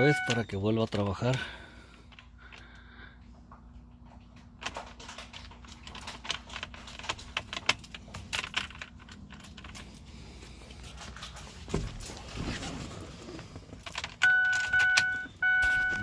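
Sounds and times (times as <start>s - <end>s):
steady low hum: 0.0s - 16.0s
sharp metallic clicks and rattles: 3.8s - 10.1s.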